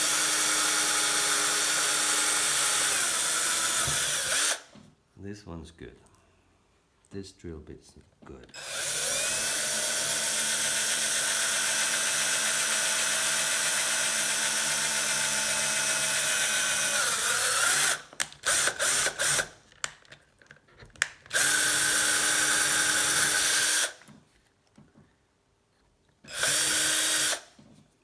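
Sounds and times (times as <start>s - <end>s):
drill trigger blips: 0.0s - 4.7s, 8.5s - 19.5s, 21.3s - 24.1s, 26.3s - 27.5s
electric drill drilling metal: 0.0s - 4.7s, 8.6s - 19.5s, 21.3s - 24.0s, 26.3s - 27.5s.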